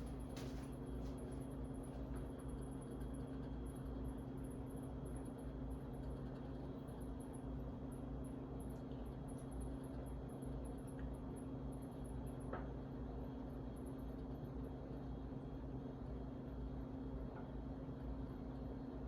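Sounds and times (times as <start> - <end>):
ceiling fan motor humming: 0.0 - 4.0.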